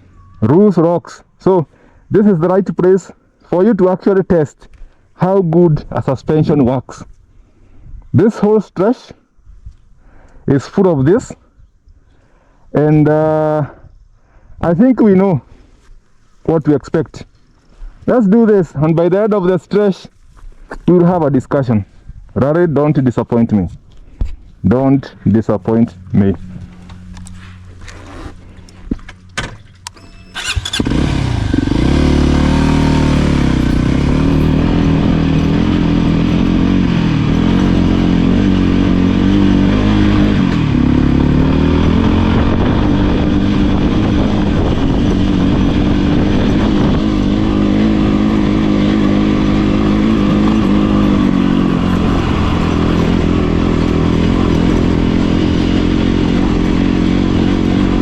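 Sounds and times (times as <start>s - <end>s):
motorcycle engine revving: 25.5s - 58.0s.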